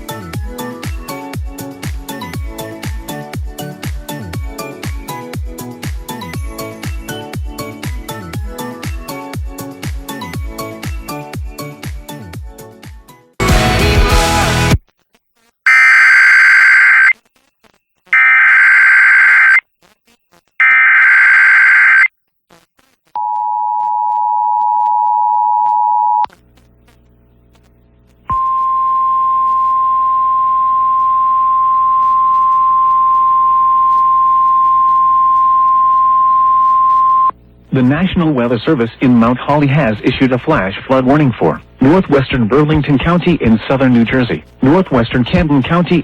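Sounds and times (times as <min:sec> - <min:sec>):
two-tone attention signal: 0:15.7 - 0:17.1, 0:18.2 - 0:19.6
digital data bursts: 0:18.1 - 0:19.6, 0:20.4 - 0:22.1
rasping digital screech: 0:18.1 - 0:19.6, 0:20.6 - 0:22.1.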